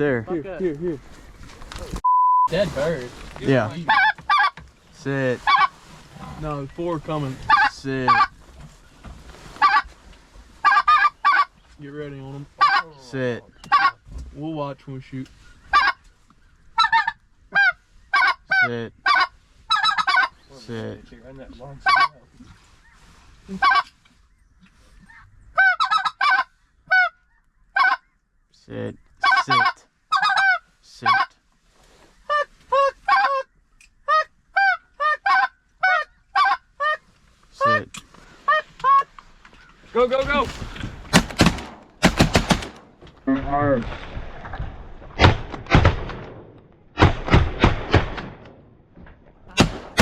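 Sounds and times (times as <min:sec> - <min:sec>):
shotgun blasts: 0:40.3 - 0:43.0, 0:45.2 - 0:48.6, 0:49.5 - 0:50.0.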